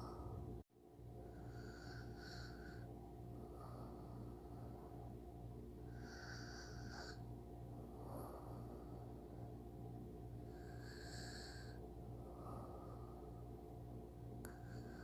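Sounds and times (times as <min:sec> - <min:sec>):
person snoring softly: 0:00.0 - 0:00.5, 0:01.2 - 0:05.2, 0:05.8 - 0:09.5, 0:10.4 - 0:13.5, 0:14.4 - 0:15.0
faint low hum: 0:00.0 - 0:15.0.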